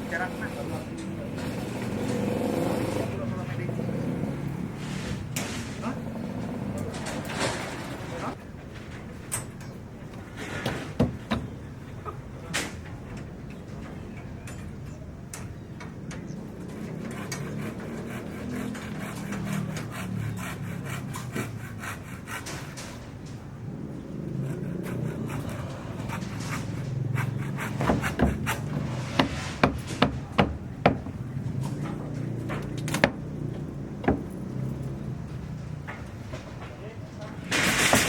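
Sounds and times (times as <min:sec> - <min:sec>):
scraping and rubbing: 0:00.0 - 0:08.4, 0:16.4 - 0:38.0
sharp knocks: 0:10.6 - 0:11.6, 0:24.4 - 0:36.6.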